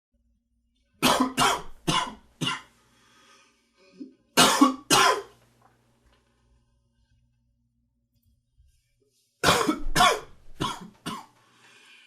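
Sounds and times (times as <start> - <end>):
man coughing: 1.0 - 2.7, 4.4 - 5.3, 9.4 - 11.3.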